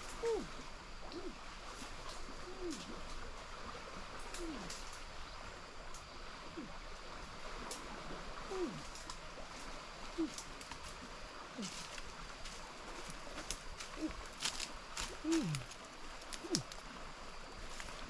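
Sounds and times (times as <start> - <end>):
running water rushing: 0.0 - 18.0
animal's low falling call: 15.2 - 15.7.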